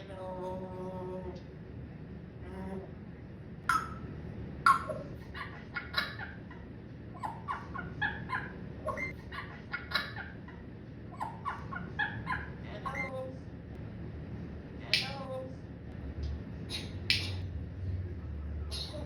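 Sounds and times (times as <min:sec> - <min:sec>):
parrot squawking and chattering: 0:03.7 - 0:13.4, 0:16.7 - 0:17.6, 0:18.2 - 0:19.0.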